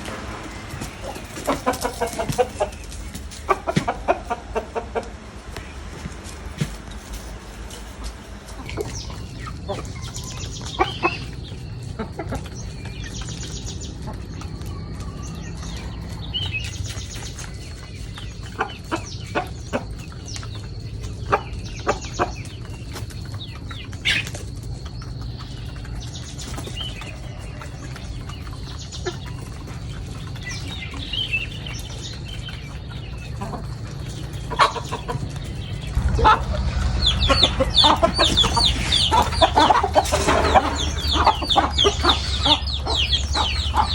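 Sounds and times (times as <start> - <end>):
chickens clucking: 0.0 - 43.9
steady low hum: 28.1 - 43.9.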